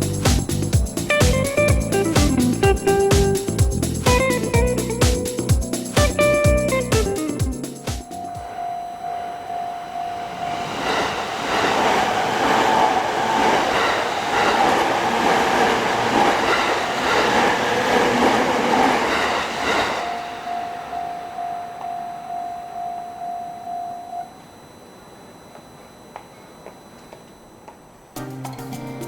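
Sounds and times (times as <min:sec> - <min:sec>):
level crossing bell ringing: 0:07.8 - 0:10.6, 0:20.0 - 0:24.5
train wheels clattering: 0:10.5 - 0:21.0.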